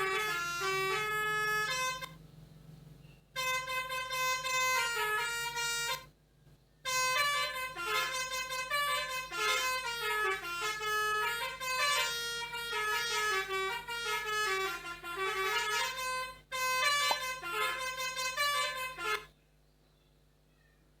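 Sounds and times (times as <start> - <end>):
melodica playing held notes: 0.0 - 2.2, 3.4 - 6.1, 6.9 - 19.3.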